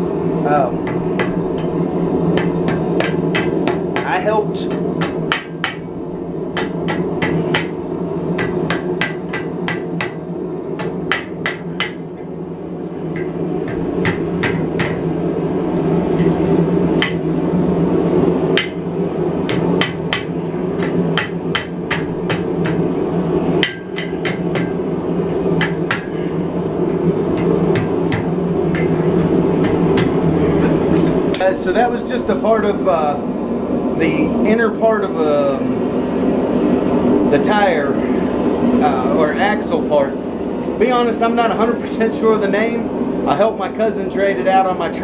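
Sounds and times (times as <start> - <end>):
steady drone: 0.0 - 45.0
hammer striking hot steel: 0.6 - 5.9, 6.6 - 7.8, 8.4 - 10.2, 10.8 - 12.3, 13.1 - 15.1, 16.2 - 16.4, 17.0 - 17.2, 18.5 - 22.9, 23.6 - 24.8, 25.6 - 26.2, 26.9 - 31.5.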